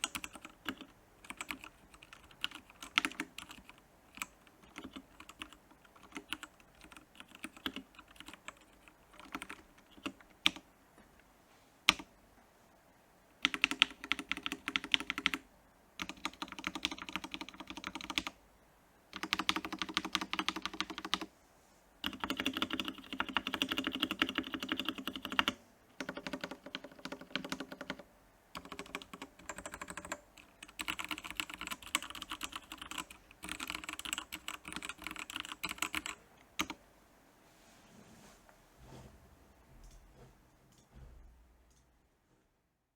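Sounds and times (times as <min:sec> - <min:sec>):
mechanical keyboard typing: 0:00.0 - 0:10.6, 0:13.4 - 0:15.4, 0:16.0 - 0:18.4, 0:19.1 - 0:21.3, 0:22.0 - 0:28.0, 0:28.6 - 0:36.8.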